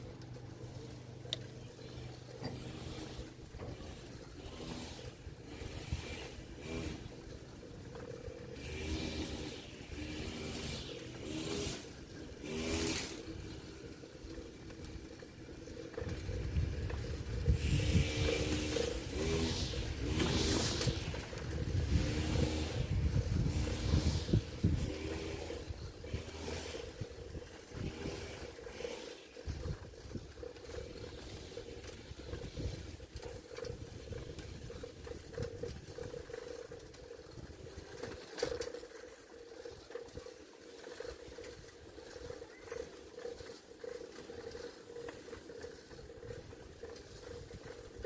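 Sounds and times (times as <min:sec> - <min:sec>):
bicycle rolling noise: 0:00.0 - 0:48.0
wind buffeting microphone: 0:11.2 - 0:38.3.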